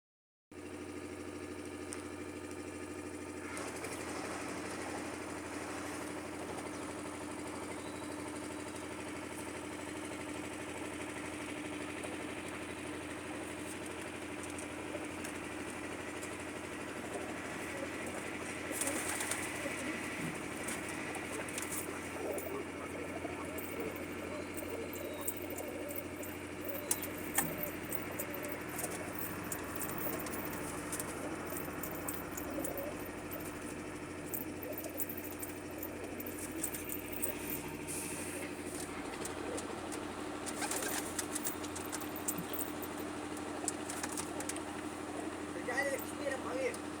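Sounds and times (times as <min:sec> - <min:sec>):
steady low hum: 0:16.8 - 0:43.0
birds calling: 0:17.0 - 0:39.9.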